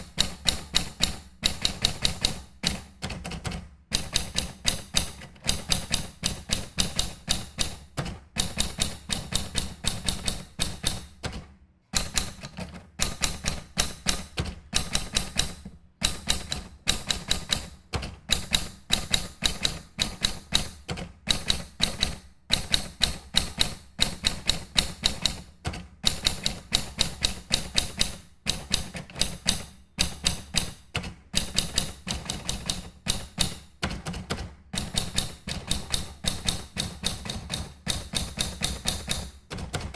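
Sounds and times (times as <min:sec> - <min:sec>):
typewriter keys clacking: 0:12.0 - 0:39.9.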